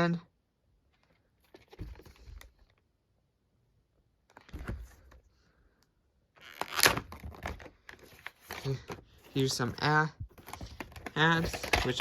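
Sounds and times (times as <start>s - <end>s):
plastic case clicks and rustles: 10.3s - 12.0s.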